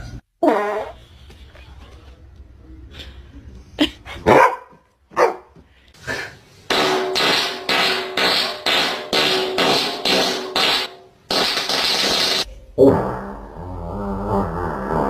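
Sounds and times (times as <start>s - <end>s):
dog barking: 4.2s - 5.5s.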